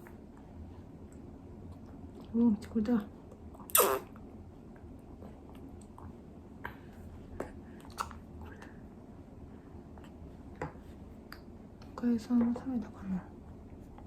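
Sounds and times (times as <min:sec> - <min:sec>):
low steady hum: 0:00.0 - 0:14.0
baby mouth sounds: 0:03.6 - 0:04.2.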